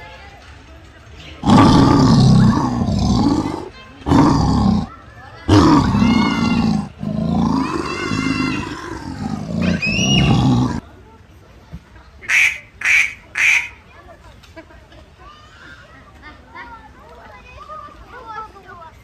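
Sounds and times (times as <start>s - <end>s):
big cat roaring: 1.4s - 4.9s, 5.5s - 10.8s.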